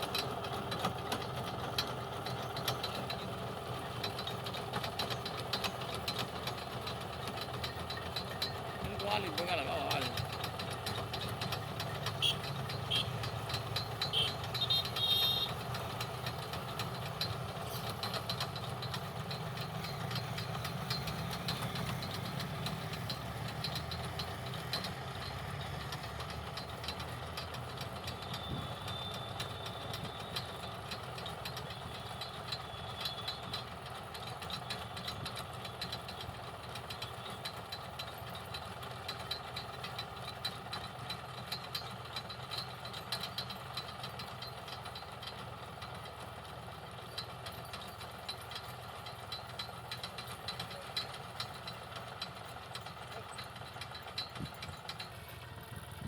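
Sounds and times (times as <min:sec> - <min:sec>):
engine hum: 0:00.0 - 0:56.0
mechanical rattle: 0:15.8 - 0:56.0.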